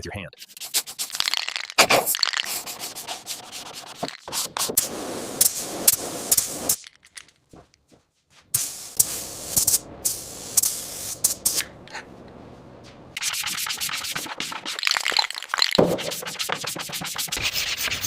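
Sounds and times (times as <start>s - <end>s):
hand sanding car panel: 15.8s - 18.0s.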